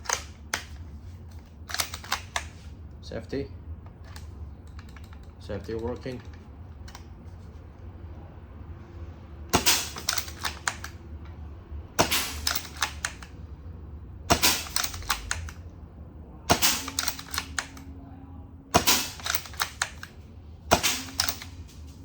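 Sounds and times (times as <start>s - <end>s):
metallic rifle bolt clacks: 0.0s - 2.7s, 3.8s - 7.1s, 9.5s - 11.4s, 12.0s - 13.4s, 14.3s - 15.6s, 16.5s - 17.9s, 18.8s - 21.9s
air rifle shot crack: 9.5s - 10.2s, 12.0s - 12.7s, 14.3s - 15.0s, 16.5s - 17.2s, 18.7s - 19.4s, 20.7s - 21.4s.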